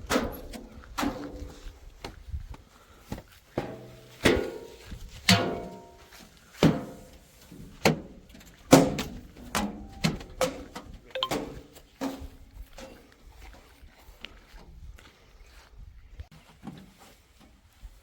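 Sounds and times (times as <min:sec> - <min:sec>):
brief ringing tone: 0:11.2 - 0:11.4.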